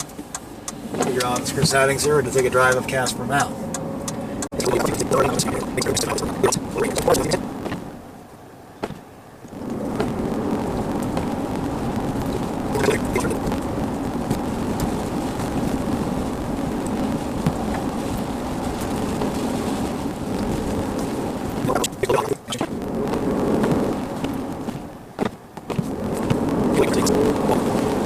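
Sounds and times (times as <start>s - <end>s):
car interior road rumble: 0.0s - 28.0s.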